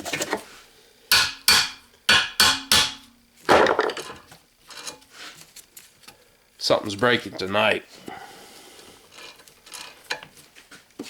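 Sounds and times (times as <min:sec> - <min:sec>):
hard metal strikes: 0:01.1 - 0:03.2.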